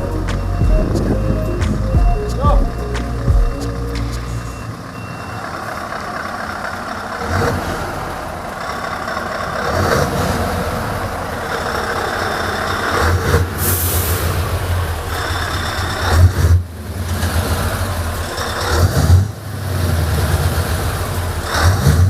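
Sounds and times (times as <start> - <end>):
road and tyre noise: 0.0 - 22.0
truck engine rumble: 0.0 - 22.0
loud air hiss: 13.6 - 14.5.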